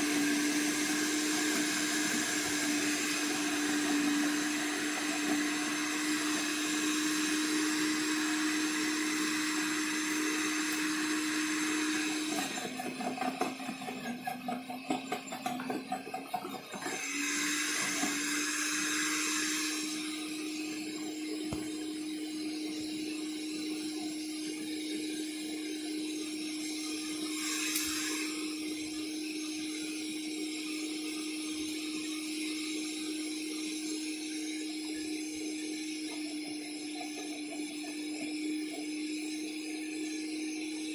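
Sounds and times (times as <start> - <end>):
wood chipper motor hum: 0.0 - 40.9.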